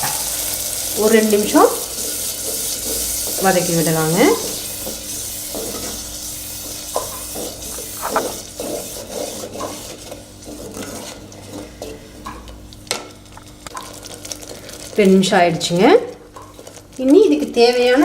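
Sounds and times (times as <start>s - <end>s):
soft sizzle: 0.0s - 18.0s
spoon scraping paste in pot: 4.4s - 11.7s.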